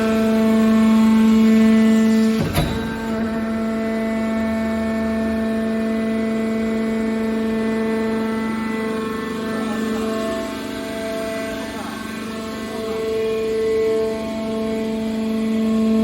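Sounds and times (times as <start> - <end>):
machine humming: 1.2 - 5.2
sharp knock: 2.4 - 3.8.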